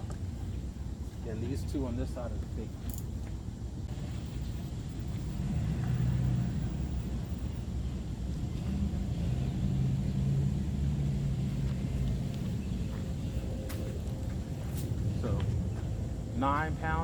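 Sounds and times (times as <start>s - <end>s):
distant engine rumble: 0.0s - 17.0s.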